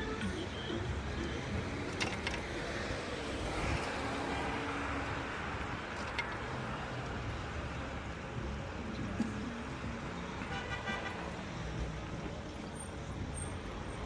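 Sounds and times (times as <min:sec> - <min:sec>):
street traffic passing: 0:00.0 - 0:14.0.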